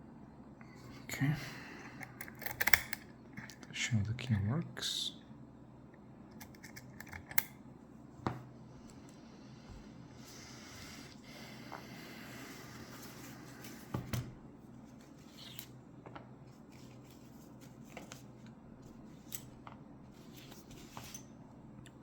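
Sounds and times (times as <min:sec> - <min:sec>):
lock and key clicking: 0:02.2 - 0:03.0.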